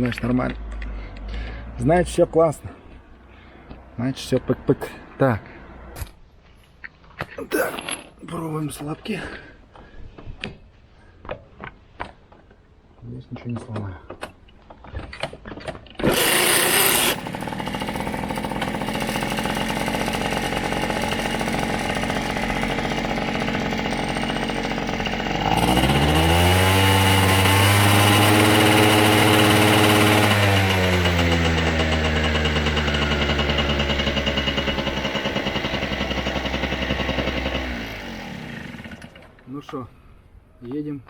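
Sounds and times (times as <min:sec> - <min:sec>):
scooter engine idling and revving: 0:16.0 - 0:39.4.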